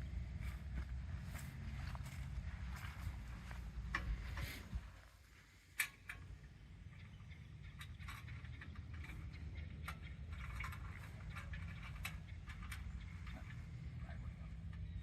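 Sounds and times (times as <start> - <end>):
distant engine rumble: 0.0 - 15.0.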